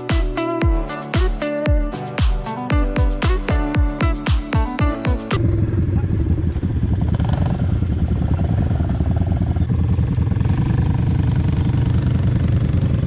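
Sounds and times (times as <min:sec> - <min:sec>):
quad bike engine running: 0:07.1 - 0:13.0.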